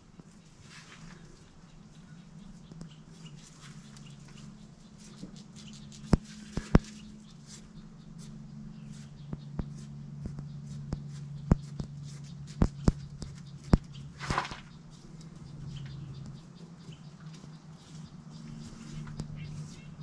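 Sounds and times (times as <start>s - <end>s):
steady low hum: 0.0s - 20.0s
sharp clicks and taps: 9.3s - 14.0s.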